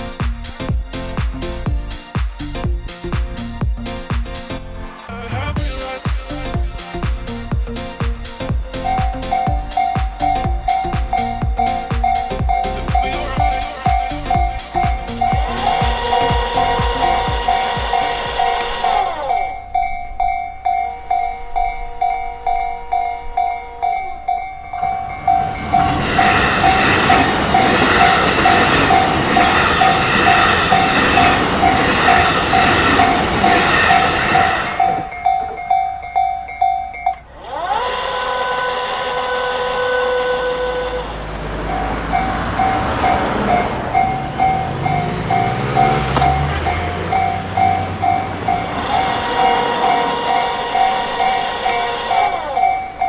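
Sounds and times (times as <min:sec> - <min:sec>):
train passing: 0:00.0 - 0:53.0
level crossing bell ringing: 0:08.8 - 0:37.9, 0:41.6 - 0:53.0.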